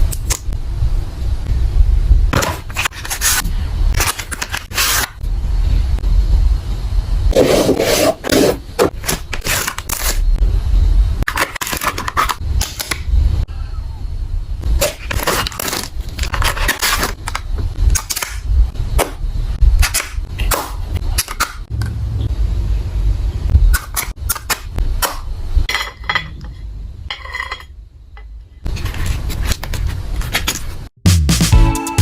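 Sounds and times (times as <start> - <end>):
low rumble: 0.5 - 2.3, 5.2 - 7.3, 21.6 - 23.8
music with a beat: 31.0 - 32.0.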